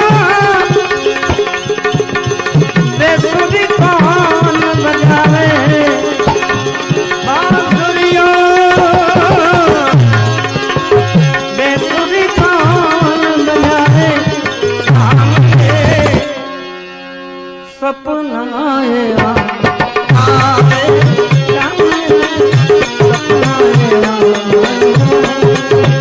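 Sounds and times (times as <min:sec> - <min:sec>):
tabla strokes: 0:00.0 - 0:16.2
ornamented melodic instrument tune: 0:00.0 - 0:26.0.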